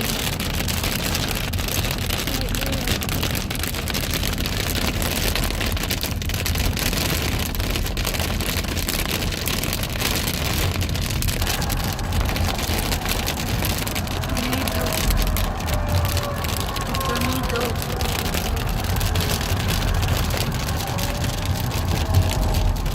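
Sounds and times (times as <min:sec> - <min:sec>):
heavy rain falling: 0:00.0 - 0:22.9.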